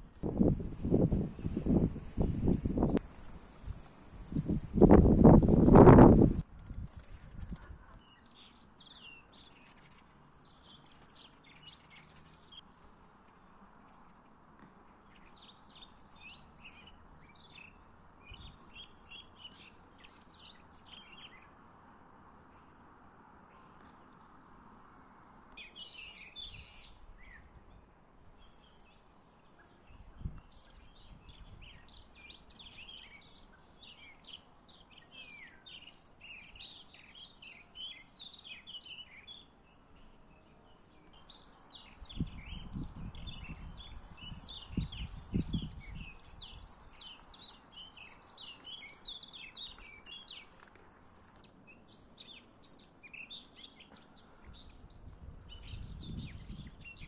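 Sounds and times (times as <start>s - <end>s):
songbirds chirping: 0.0s - 57.0s.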